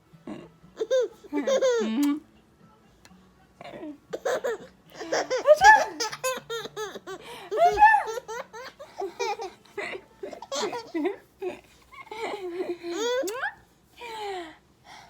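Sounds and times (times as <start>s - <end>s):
baby laughing: 0.8s - 1.9s, 4.1s - 11.2s, 12.0s - 13.6s.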